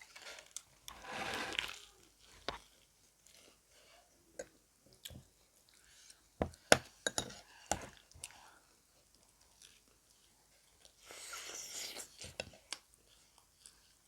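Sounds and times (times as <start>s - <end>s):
person chewing crisp bread: 7.7s - 14.0s.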